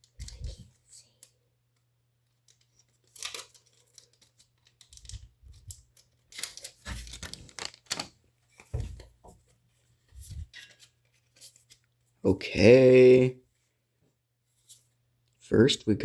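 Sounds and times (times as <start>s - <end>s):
plastic wrapper crinkling: 2.5s - 8.2s.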